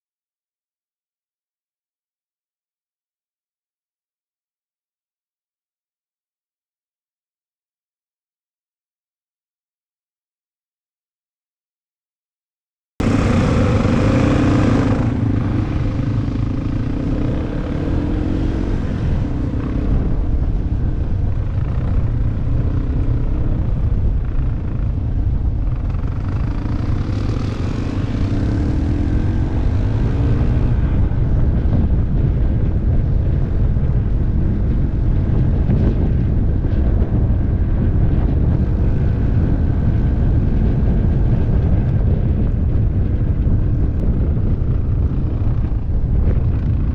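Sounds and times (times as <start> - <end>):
motorcycle engine revving: 13.0 - 46.9
wind rumble on microphone: 13.0 - 46.9.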